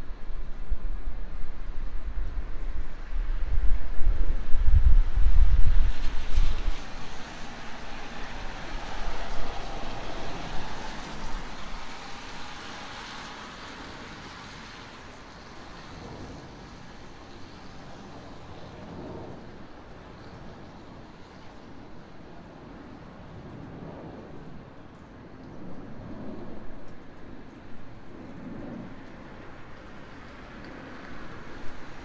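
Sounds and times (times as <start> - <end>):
airplane passing overhead: 0.0 - 32.0.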